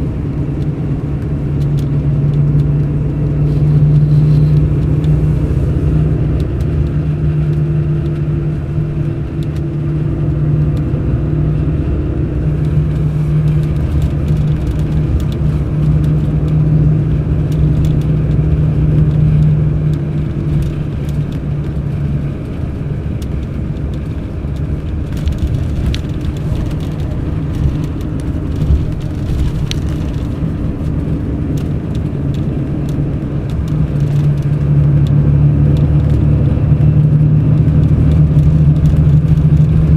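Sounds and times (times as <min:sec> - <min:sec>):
bus diesel engine drone: 0:00.0 - 0:39.9.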